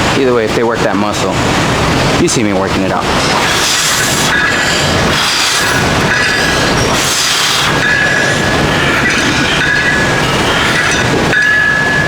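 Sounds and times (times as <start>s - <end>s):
exercise machine squealing whine: 3.0s - 12.0s.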